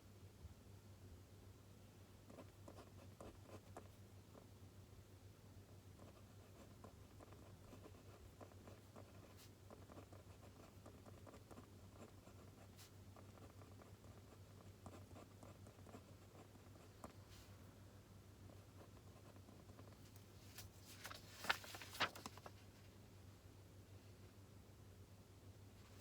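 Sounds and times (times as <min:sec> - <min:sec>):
pen scratching on paper: 0:06.0 - 0:17.2.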